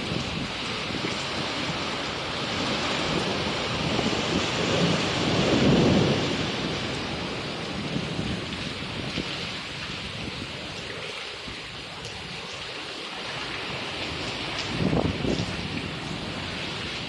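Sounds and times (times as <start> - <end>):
steady rain: 0.0 - 17.0
thunder rolling: 2.4 - 9.2.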